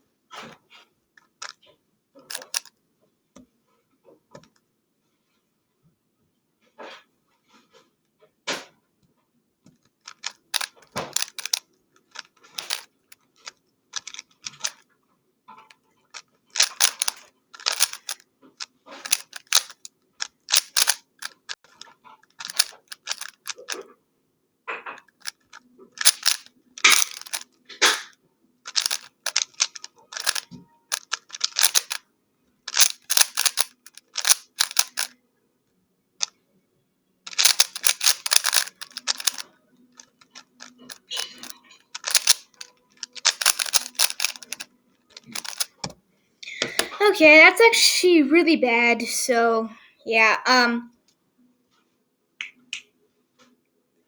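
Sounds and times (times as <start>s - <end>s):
puzzle cube layers clicking: 2.3s - 2.7s, 10.1s - 11.6s, 12.2s - 12.9s, 14.0s - 14.8s, 16.6s - 18.2s, 19.0s - 21.6s, 22.4s - 23.8s, 25.1s - 28.0s, 28.7s - 32.0s, 32.7s - 35.1s, 37.3s - 39.4s, 40.3s - 46.0s.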